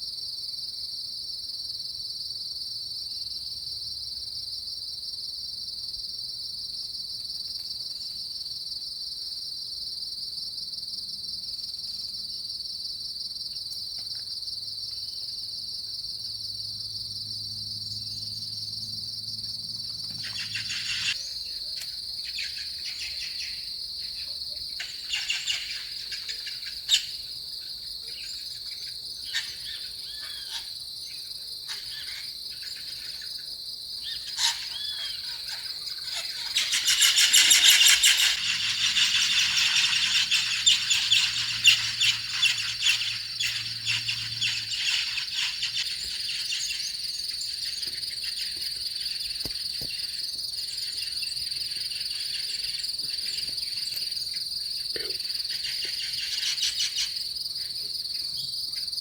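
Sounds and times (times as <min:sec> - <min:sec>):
insects trilling: 0:00.0 - 0:59.0
short chirping calls: 0:20.1 - 0:21.5, 0:34.1 - 0:54.0.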